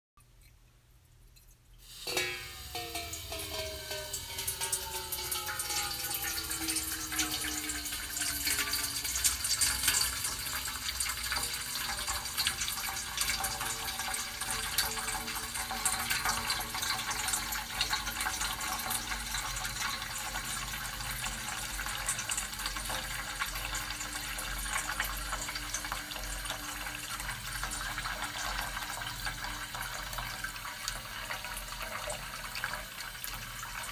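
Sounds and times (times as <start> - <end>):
water pouring into metal tin: 1.8 - 33.9
faint ringing tones sliding down: 2.1 - 9.2.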